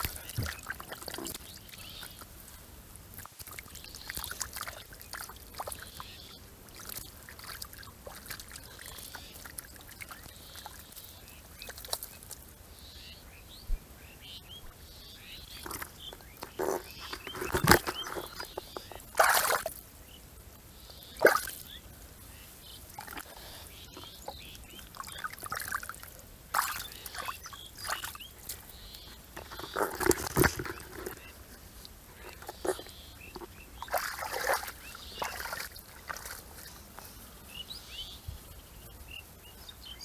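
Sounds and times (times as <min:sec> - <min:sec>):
small birds chirping: 0:00.0 - 0:02.6, 0:03.2 - 0:40.0
water splashing and dribbling: 0:00.0 - 0:12.6, 0:15.5 - 0:20.0, 0:21.1 - 0:21.8, 0:22.8 - 0:36.9.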